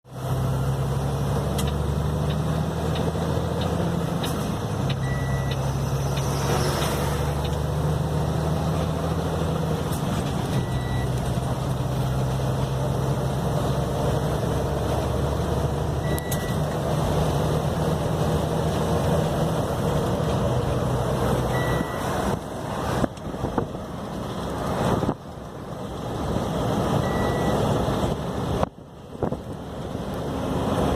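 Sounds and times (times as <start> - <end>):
short high beep: 5.0 - 6.9, 16.0 - 16.6, 21.5 - 22.1, 27.0 - 27.7.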